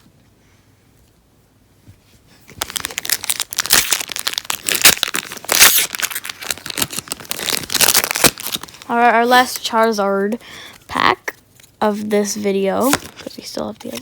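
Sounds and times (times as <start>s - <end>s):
foil wrapper crinkling and tearing: 2.6s - 9.8s.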